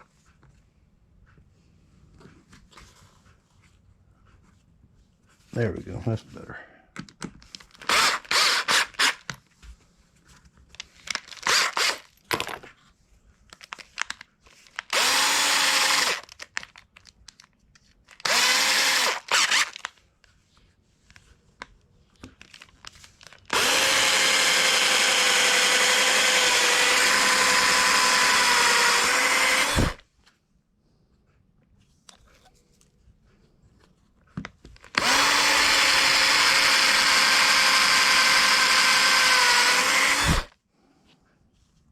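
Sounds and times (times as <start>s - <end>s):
electric drill running: 7.8s - 9.2s, 11.4s - 12.0s, 14.9s - 16.3s, 18.2s - 19.8s, 23.5s - 30.0s, 34.9s - 40.5s.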